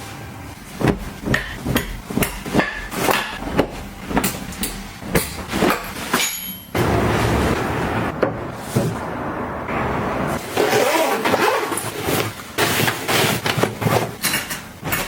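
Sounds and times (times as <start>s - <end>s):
hard objects knocking and clacking: 0.8s - 6.8s.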